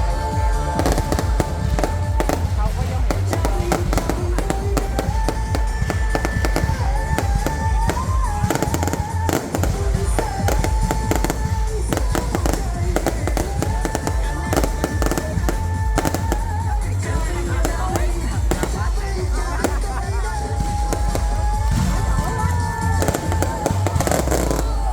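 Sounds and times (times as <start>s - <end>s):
deep rumble: 0.0s - 24.9s
fireworks bangs and crackles: 0.0s - 24.9s.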